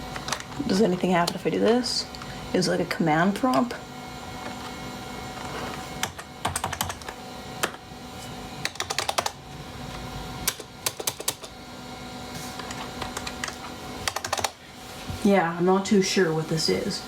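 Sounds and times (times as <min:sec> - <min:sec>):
steady low hum: 0:00.0 - 0:17.0
keyboard typing clicks: 0:08.7 - 0:09.4, 0:10.5 - 0:11.5.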